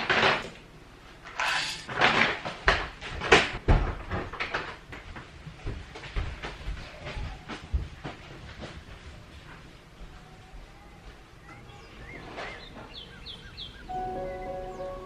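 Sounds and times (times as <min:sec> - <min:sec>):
scraping rustles of containers: 0:01.2 - 0:03.6.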